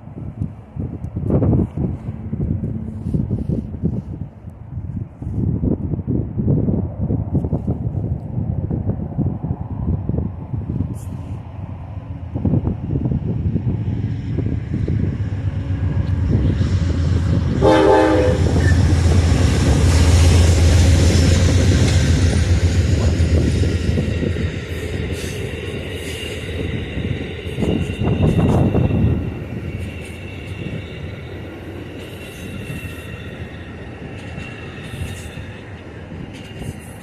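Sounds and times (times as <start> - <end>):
train rumble and rail clatter: 0.0 - 37.0
train horn blast: 17.5 - 19.3.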